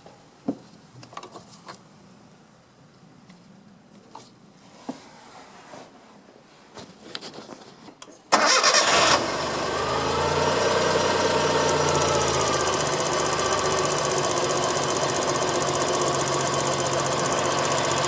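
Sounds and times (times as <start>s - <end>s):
car engine starting and idling: 8.3s - 18.0s.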